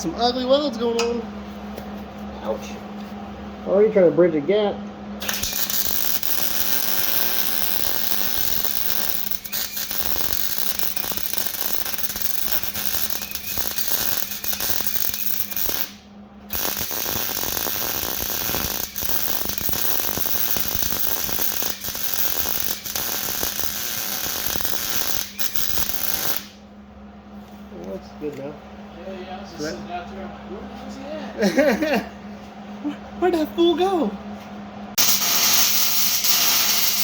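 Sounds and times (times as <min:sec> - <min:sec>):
welder arc crackling: 0:05.2 - 0:26.6, 0:35.0 - 0:37.0.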